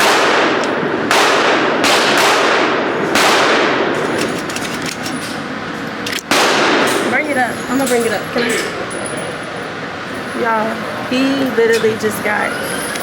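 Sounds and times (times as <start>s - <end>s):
gunshots with echo: 0.0s - 5.4s, 6.0s - 7.2s.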